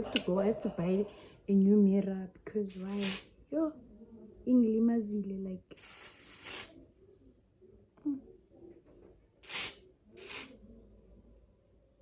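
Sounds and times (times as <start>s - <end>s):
aerosol spray hissing: 2.7s - 3.3s, 5.8s - 6.8s, 9.4s - 10.5s.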